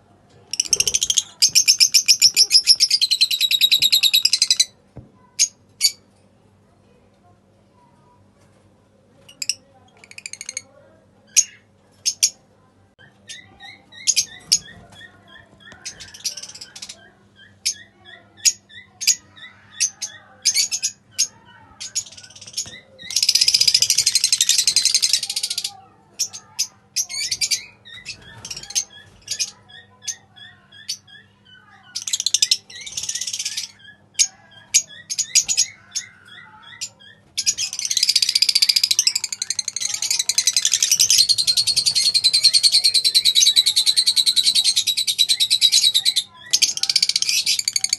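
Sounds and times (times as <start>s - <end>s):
lovebirds chirping: 0.5s - 6.0s, 13.2s - 47.9s
harsh chattering screeches: 22.0s - 25.7s, 37.6s - 47.9s.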